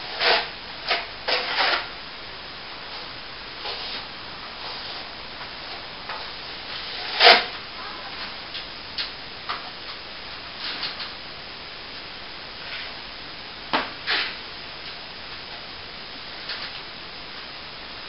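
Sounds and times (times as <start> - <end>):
hand tool scraping plaster wall: 0.0 - 1.9, 6.7 - 7.5
steady hiss: 0.0 - 18.0.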